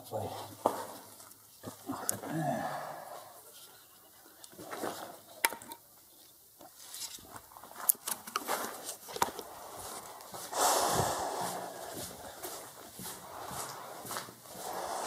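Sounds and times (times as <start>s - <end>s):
rustling: 3.3s - 15.0s
footsteps scuffing on rough floor: 6.7s - 14.9s.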